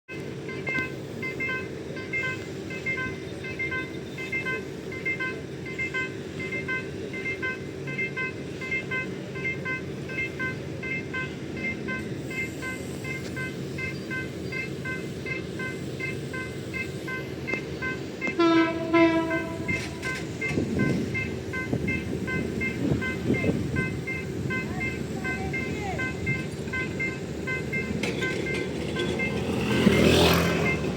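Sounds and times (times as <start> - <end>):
diesel locomotive engine droning: 0.1 - 30.9
locomotive horn blast: 0.3 - 30.9
electronic warning ding: 19.3 - 30.9.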